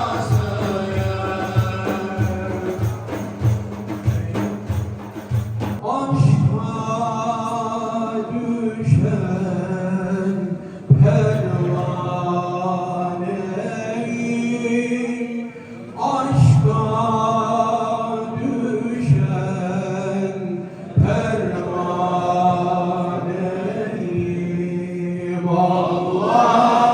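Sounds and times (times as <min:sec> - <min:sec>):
person chanting a hymn: 0:00.0 - 0:04.8, 0:05.8 - 0:26.9.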